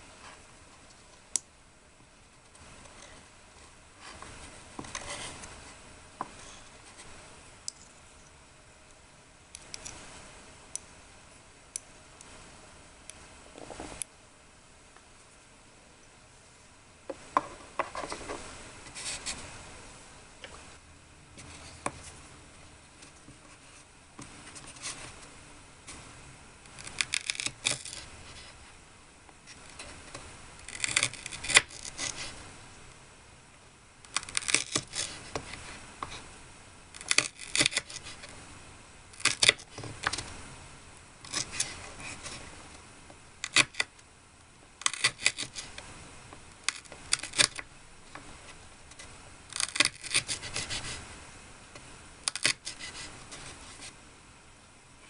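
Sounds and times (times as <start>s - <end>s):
small tools clicking and scraping: 52.2s - 53.4s.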